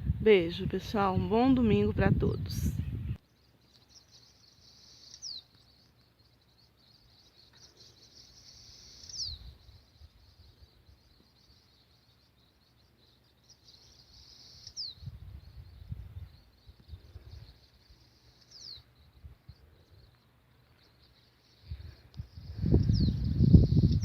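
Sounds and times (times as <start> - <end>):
crickets chirping: 3.2 - 24.0.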